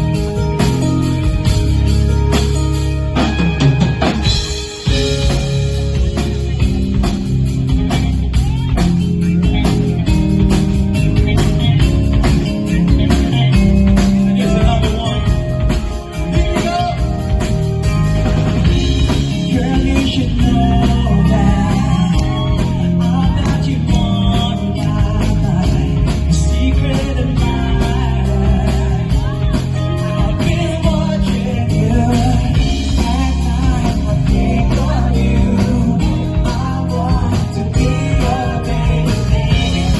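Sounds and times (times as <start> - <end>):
live band music: 0.0 - 39.9
man singing: 11.4 - 18.0, 18.7 - 39.9.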